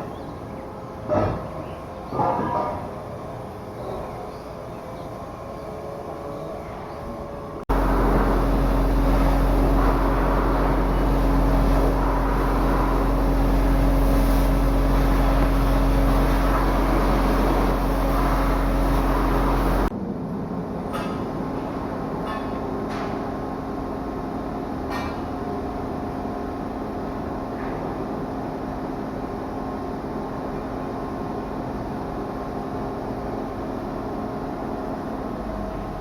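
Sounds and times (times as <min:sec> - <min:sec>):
quieter machinery noise: 0:00.0 - 0:36.0
heavy machinery drone: 0:05.2 - 0:26.0.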